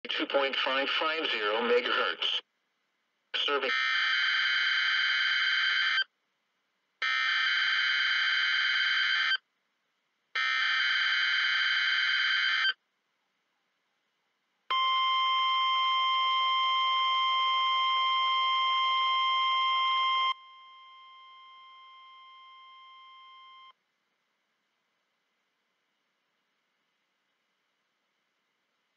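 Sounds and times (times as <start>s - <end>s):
steady warning alarm tone: 3.7s - 6.0s, 7.0s - 9.4s, 10.4s - 12.7s.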